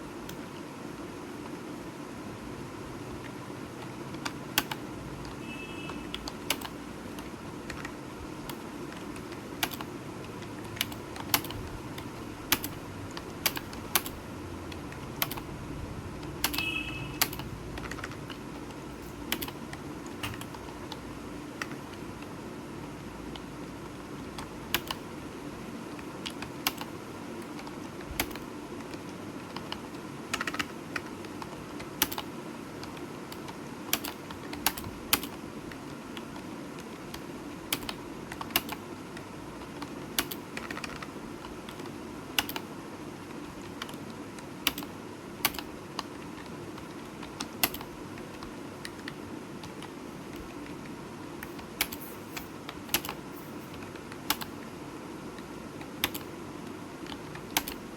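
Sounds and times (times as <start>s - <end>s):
steady low hum: 0.0s - 26.3s
keyboard keys clicking: 3.2s - 15.5s, 16.2s - 22.3s, 23.3s - 25.1s, 26.0s - 54.6s, 55.3s - 57.9s.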